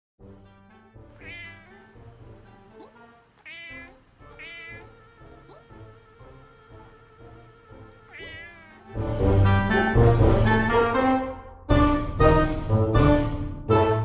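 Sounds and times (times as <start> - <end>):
background music: 0.2 - 14.0
cat meowing: 1.2 - 2.0, 2.8 - 9.0.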